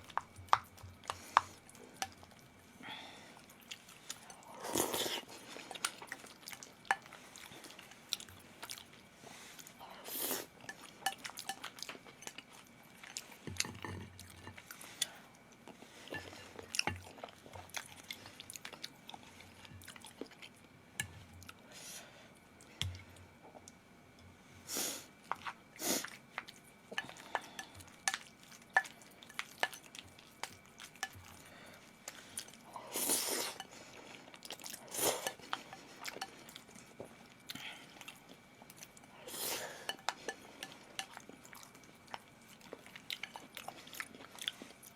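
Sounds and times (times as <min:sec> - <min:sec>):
person chewing and eating: 0:00.0 - 0:21.7, 0:25.2 - 0:44.9.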